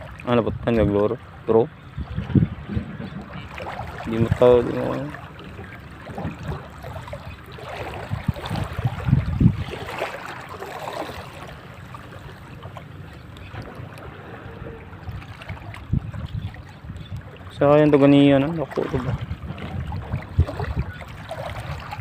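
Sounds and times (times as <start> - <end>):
water: 0.0 - 22.0
wind: 0.0 - 22.0
low thumps: 2.2 - 4.4.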